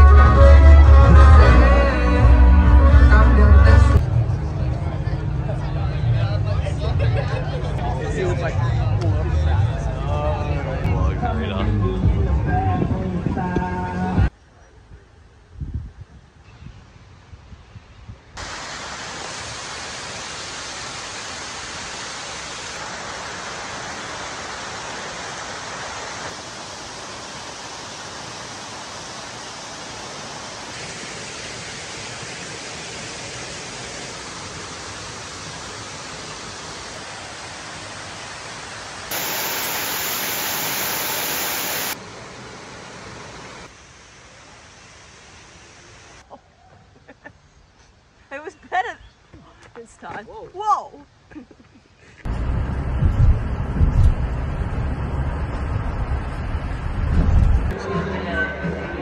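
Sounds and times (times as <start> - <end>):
rushing water: 18.4 - 46.2.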